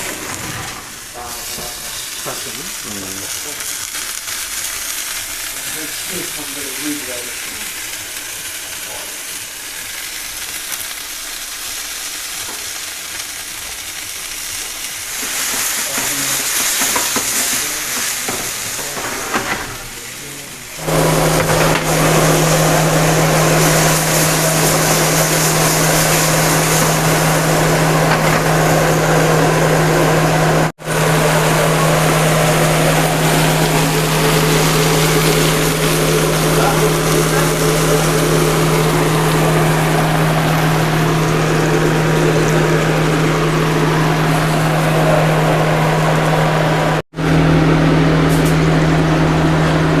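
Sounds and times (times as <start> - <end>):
steady hiss: 1.0 - 29.8
loud machine hum: 15.9 - 50.0.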